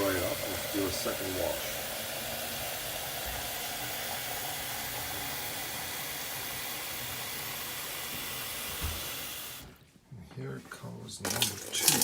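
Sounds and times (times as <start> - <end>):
water running from tap into pitcher: 0.0 - 9.8, 11.2 - 12.0.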